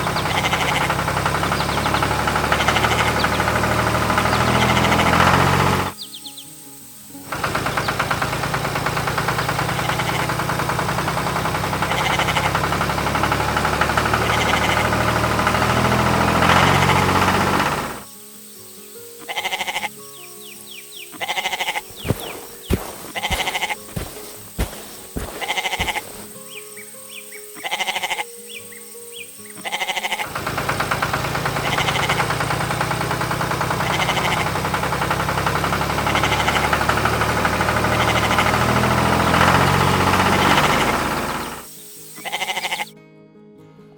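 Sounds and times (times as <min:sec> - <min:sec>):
short animal calls: 0:00.0 - 0:05.4, 0:11.8 - 0:12.8, 0:14.1 - 0:15.1, 0:19.2 - 0:20.0, 0:21.1 - 0:26.4, 0:27.6 - 0:28.3, 0:29.6 - 0:30.4, 0:31.6 - 0:32.6, 0:33.8 - 0:34.8, 0:36.0 - 0:42.9
engine-like rumble: 0:00.0 - 0:06.0, 0:07.2 - 0:18.0, 0:21.4 - 0:26.4, 0:30.3 - 0:42.8.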